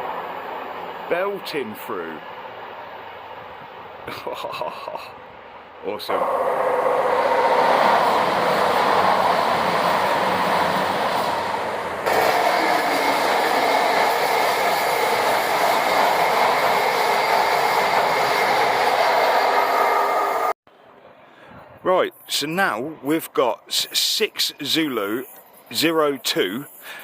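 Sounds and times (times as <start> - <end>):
train passing at speed: 0.0 - 21.2.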